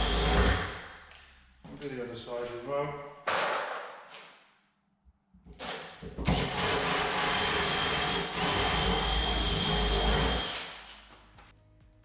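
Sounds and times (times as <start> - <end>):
power drill boring into wood: 0.0 - 0.8, 5.6 - 10.8.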